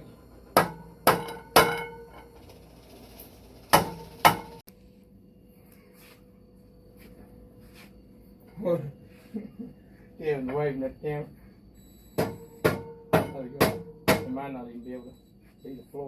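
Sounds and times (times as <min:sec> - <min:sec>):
hammer blows on metal pipe: 0:00.0 - 0:02.4, 0:03.6 - 0:04.6.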